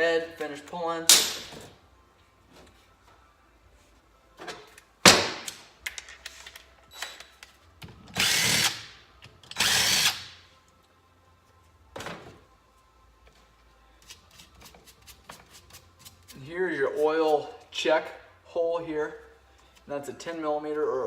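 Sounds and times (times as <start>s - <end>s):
power drill running: 8.2s - 8.8s, 9.6s - 10.2s.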